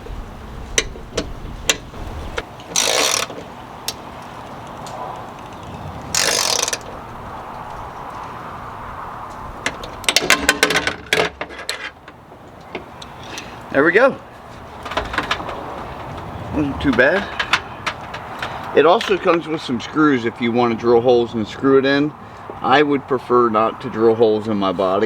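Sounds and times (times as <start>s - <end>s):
ratchet wrench clicking: 2.7s - 3.3s, 6.1s - 6.9s.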